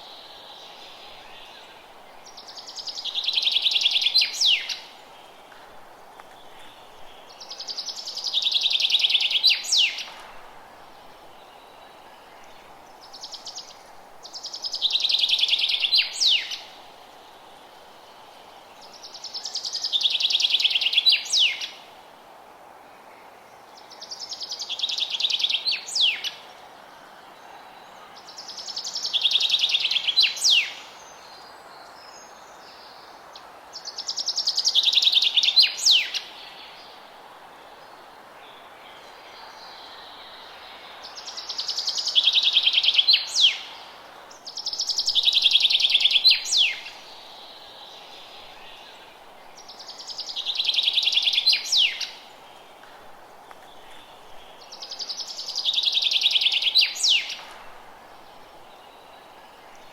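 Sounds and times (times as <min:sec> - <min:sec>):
songbird trilling song: 0:00.0 - 0:05.0, 0:06.4 - 0:10.1, 0:11.4 - 0:16.7, 0:28.2 - 0:33.0, 0:33.9 - 0:37.0, 0:38.5 - 0:52.5, 0:53.4 - 0:57.6
steady hiss: 0:00.0 - 0:59.9.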